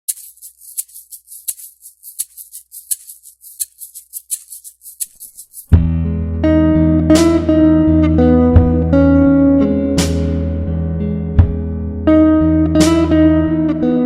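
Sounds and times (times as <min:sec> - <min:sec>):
music with bass and guitar: 0:05.7 - 0:14.0.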